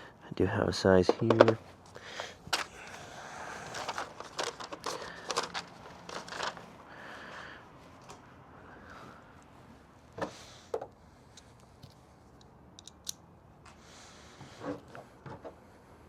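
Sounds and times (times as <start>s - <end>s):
clicks and taps of hand tools: 1.1s - 1.6s.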